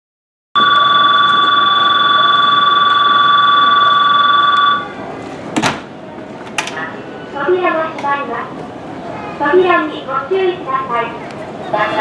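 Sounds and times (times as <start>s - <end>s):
platform bell ringing: 0.6s - 5.0s.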